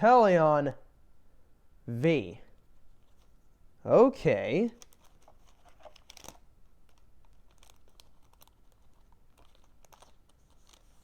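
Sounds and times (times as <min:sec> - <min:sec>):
trading cards handled on table: 0:04.8 - 0:11.0.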